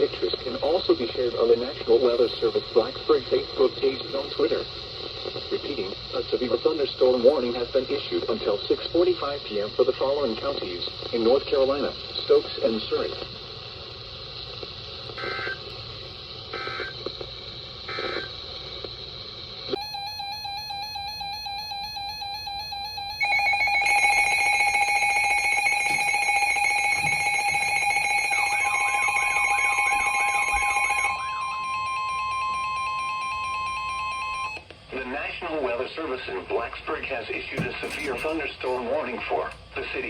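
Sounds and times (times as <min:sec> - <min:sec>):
buzzing data signal: 0:16.5 - 0:17.1, 0:17.8 - 0:18.4, 0:19.7 - 0:34.6
loud steady alarm tone: 0:19.7 - 0:34.6.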